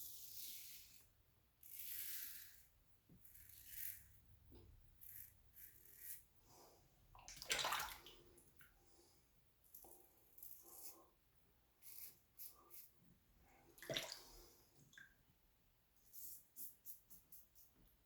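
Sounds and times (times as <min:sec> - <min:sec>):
razor blade scraping stubble: 0:01.6 - 0:04.2, 0:05.0 - 0:06.3, 0:11.8 - 0:12.9.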